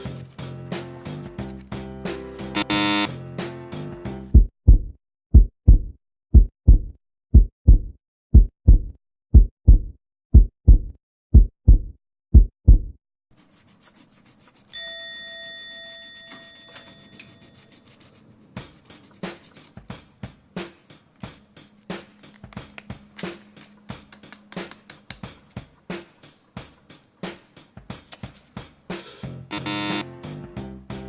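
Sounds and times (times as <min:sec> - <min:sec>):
heartbeat thumps: 0:04.3 - 0:13.0
bell-like ding: 0:14.8 - 0:17.5.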